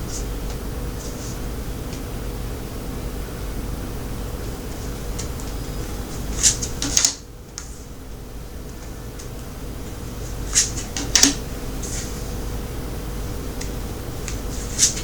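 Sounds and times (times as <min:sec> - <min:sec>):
steady low hum: 0:00.0 - 0:15.0
cards snapping and clicking: 0:06.3 - 0:07.2, 0:10.5 - 0:11.4, 0:13.6 - 0:15.0.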